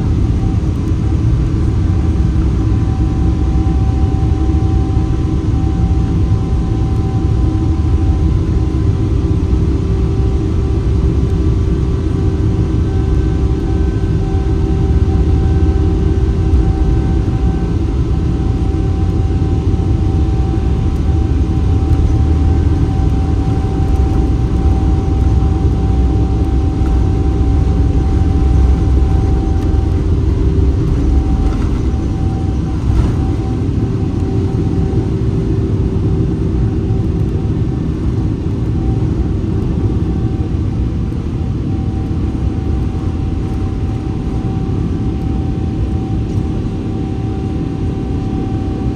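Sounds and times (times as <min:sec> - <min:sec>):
jet engines rumbling in cabin: 0:00.0 - 0:48.9
engine whining tones: 0:14.4 - 0:35.4.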